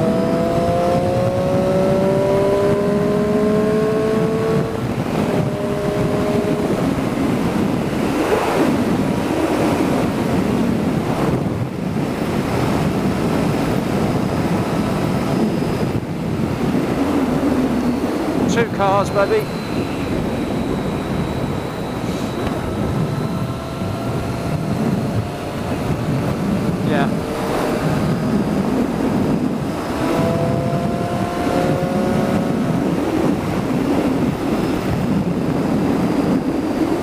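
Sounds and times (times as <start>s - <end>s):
motorcycle engine revving: 0.0s - 36.7s
wind rushing over microphone: 0.0s - 37.0s.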